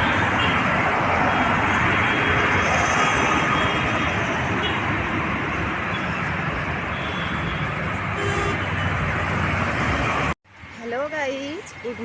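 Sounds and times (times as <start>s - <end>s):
road traffic noise: 0.0s - 12.0s
vehicle horn toot: 6.9s - 8.7s.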